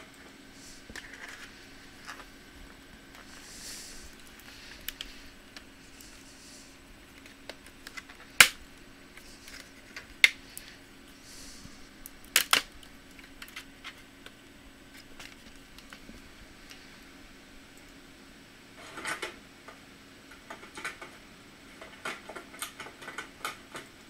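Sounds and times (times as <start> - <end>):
faint steady hum: 0.0 - 24.0
plastic parts clicking: 12.2 - 16.0.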